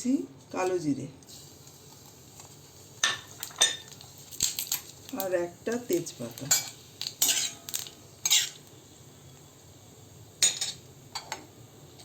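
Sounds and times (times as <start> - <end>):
spatula scraping in a pan: 5.7 - 9.4.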